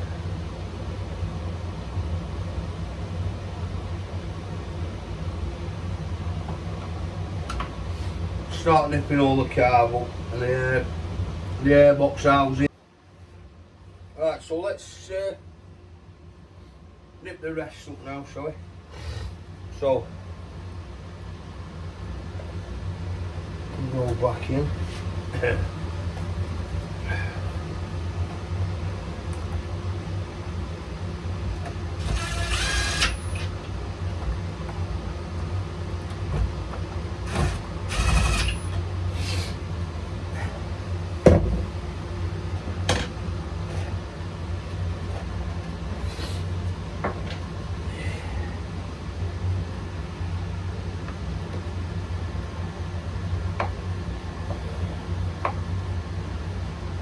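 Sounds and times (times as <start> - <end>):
steady low hum: 0.0 - 57.0
power tool bursts: 32.0 - 33.5, 37.3 - 39.5.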